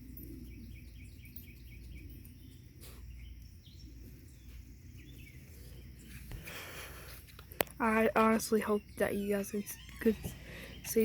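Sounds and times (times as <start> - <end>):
bird chirping faintly: 0.0 - 6.3.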